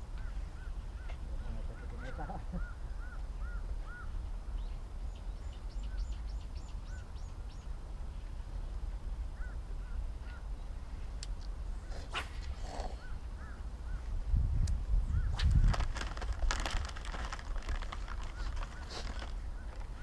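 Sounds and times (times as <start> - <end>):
birds whistling: 1.8 - 7.7.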